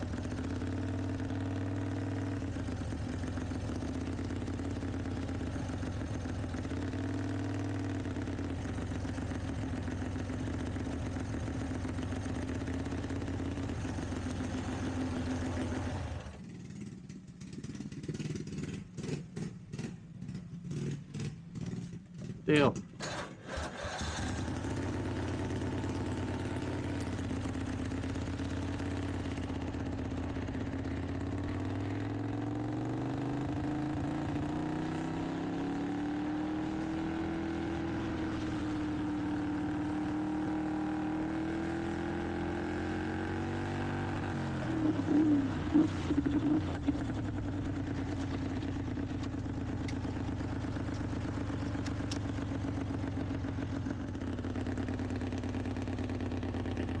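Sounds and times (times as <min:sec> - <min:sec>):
lawnmower engine revving: 0:23.0 - 0:29.2.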